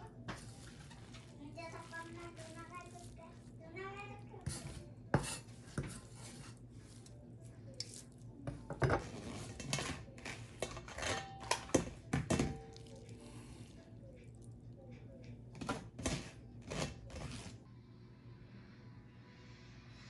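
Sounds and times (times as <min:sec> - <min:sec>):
utensils and dishes clinking: 0:08.5 - 0:13.1.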